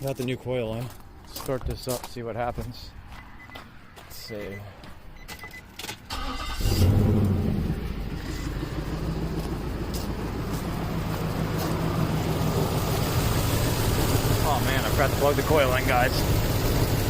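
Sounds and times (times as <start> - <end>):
engine starting and idling: 6.1 - 17.0.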